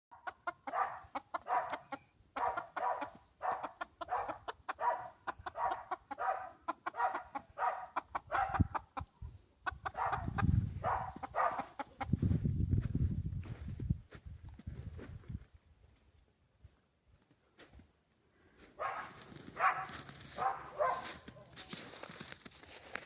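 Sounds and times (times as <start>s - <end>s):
hen clucking: 0.1s - 12.4s.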